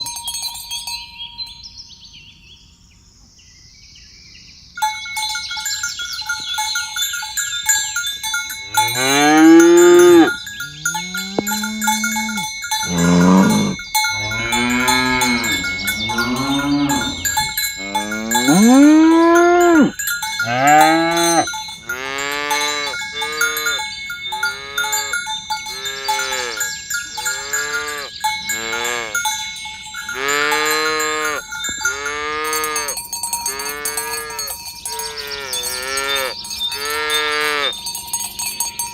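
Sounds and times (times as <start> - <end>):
cowbells ringing: 0.0 - 1.8, 4.8 - 38.9
cattle mooing: 8.7 - 23.8.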